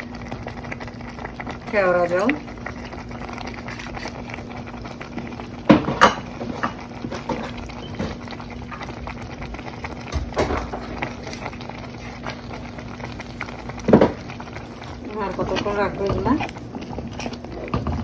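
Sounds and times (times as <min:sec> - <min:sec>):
steady low stove hum: 0:00.0 - 0:18.0
utensils clattering against pot: 0:05.7 - 0:09.0, 0:10.1 - 0:11.6, 0:15.0 - 0:16.6.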